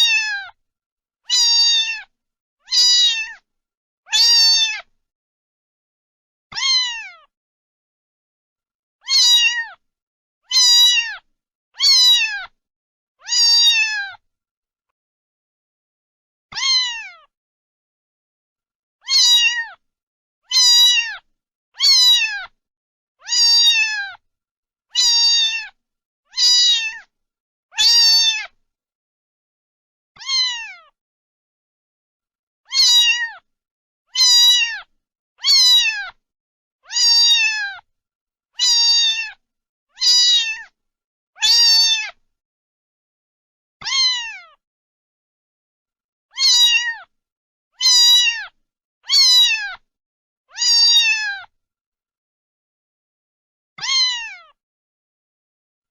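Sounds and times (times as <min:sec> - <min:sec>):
cat meowing: 0:00.0 - 0:00.6, 0:01.3 - 0:02.1, 0:02.7 - 0:03.4, 0:04.1 - 0:04.9, 0:06.5 - 0:07.3, 0:09.0 - 0:09.8, 0:10.5 - 0:12.6, 0:13.2 - 0:14.2, 0:16.5 - 0:17.3, 0:19.0 - 0:19.8, 0:20.5 - 0:22.6, 0:23.2 - 0:24.2, 0:25.0 - 0:27.1, 0:27.7 - 0:28.6, 0:30.2 - 0:31.0, 0:32.7 - 0:33.5, 0:34.1 - 0:36.2, 0:36.8 - 0:37.9, 0:38.6 - 0:39.4, 0:40.0 - 0:40.8, 0:41.4 - 0:42.2, 0:43.8 - 0:44.6, 0:46.3 - 0:47.1, 0:47.8 - 0:49.8, 0:50.5 - 0:51.5, 0:53.8 - 0:54.6.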